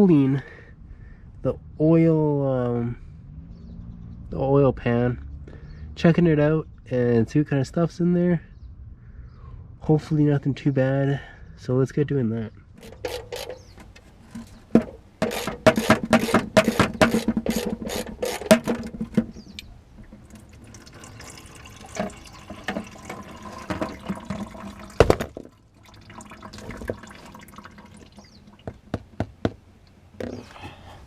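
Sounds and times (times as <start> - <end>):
rapid ratchet clicking: 12.8 - 13.7, 15.2 - 18.9
tools scraping and fiddling: 12.8 - 20.4.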